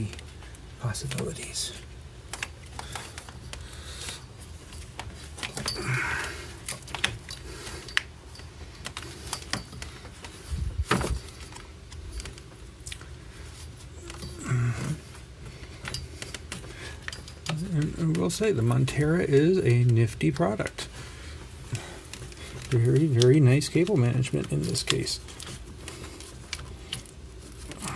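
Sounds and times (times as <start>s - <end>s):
low steady hum: 0.0s - 27.9s.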